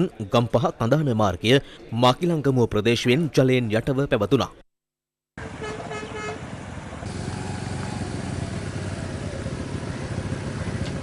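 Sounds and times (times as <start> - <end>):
vehicle horn: 5.4 - 6.5
vehicle engines running: 5.4 - 11.0.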